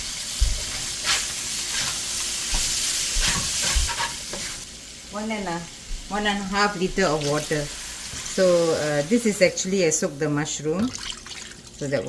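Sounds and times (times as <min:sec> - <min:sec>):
chicken sizzling in a pan: 0:00.0 - 0:09.6
spatula scraping a pan: 0:00.6 - 0:04.7.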